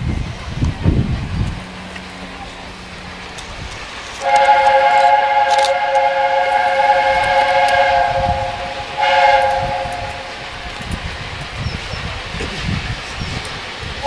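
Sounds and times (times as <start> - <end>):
steam locomotive chime whistle: 4.2 - 10.7.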